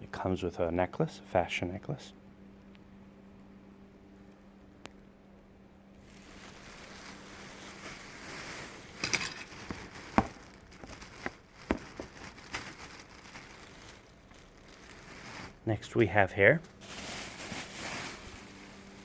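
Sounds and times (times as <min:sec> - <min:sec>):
fabric rustling: 0:06.0 - 0:15.7.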